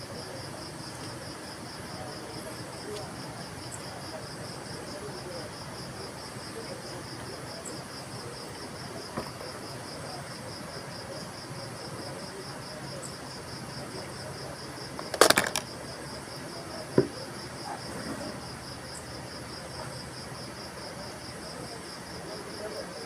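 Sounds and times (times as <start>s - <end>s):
insects trilling: 0.1s - 23.0s.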